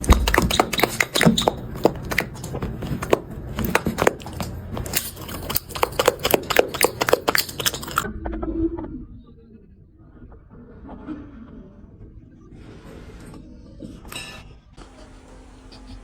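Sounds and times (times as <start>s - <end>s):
dog crunching food: 0.0s - 8.1s.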